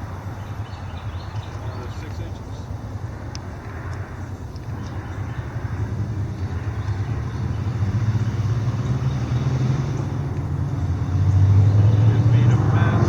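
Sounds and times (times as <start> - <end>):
road traffic rumble: 0.0 - 13.0.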